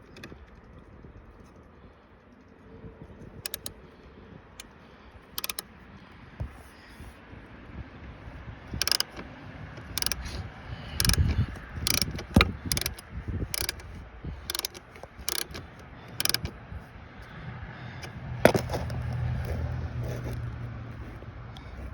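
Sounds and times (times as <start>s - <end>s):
sharp metallic clicks of hand tool: 3.4s - 3.8s, 5.4s - 5.7s, 8.7s - 16.6s, 18.0s - 20.4s.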